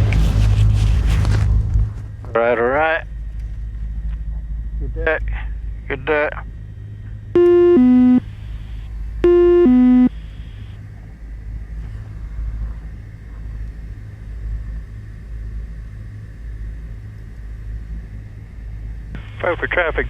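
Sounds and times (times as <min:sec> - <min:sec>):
aircraft engines idling: 0:00.0 - 0:20.0
two-tone electronic alert: 0:07.4 - 0:08.2, 0:09.2 - 0:10.2.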